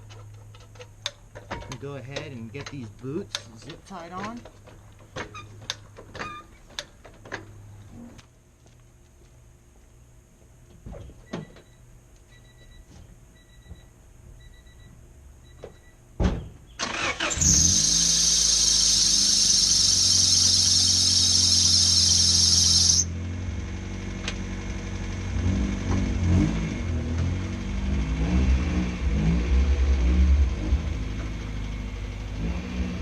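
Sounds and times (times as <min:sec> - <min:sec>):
thump: 0:16.2 - 0:16.6
car engine starting and running: 0:16.8 - 0:33.0
loud high-pitched noise: 0:17.4 - 0:23.1.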